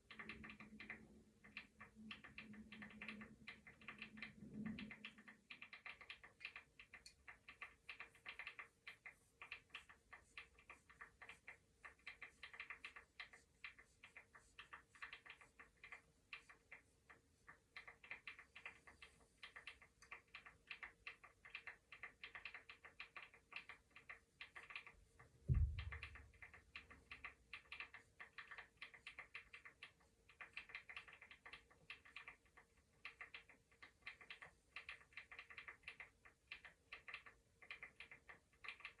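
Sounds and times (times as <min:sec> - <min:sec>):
keyboard typing: 0:00.0 - 0:39.0
low thump: 0:25.5 - 0:26.1.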